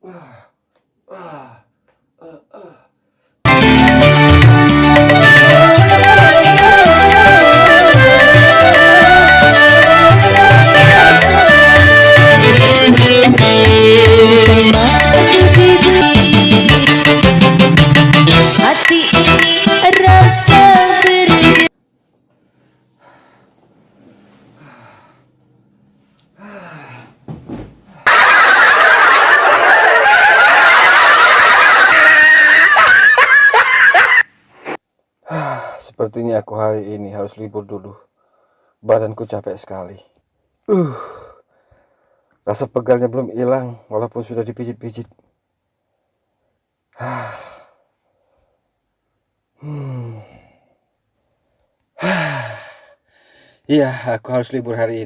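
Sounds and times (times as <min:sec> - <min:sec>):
man sighing: 0:00.0 - 0:03.0, 0:26.4 - 0:27.2, 0:35.2 - 0:35.8, 0:40.6 - 0:41.4, 0:47.0 - 0:47.8, 0:49.6 - 0:50.7, 0:52.0 - 0:53.0
background music: 0:03.5 - 0:21.7
laugh track: 0:28.0 - 0:34.8.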